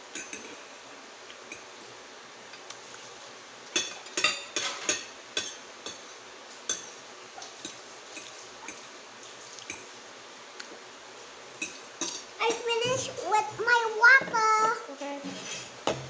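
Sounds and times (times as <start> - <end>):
utensils clinking against dishes: 0.1 - 0.6, 3.8 - 6.0, 11.6 - 12.3, 15.2 - 15.8.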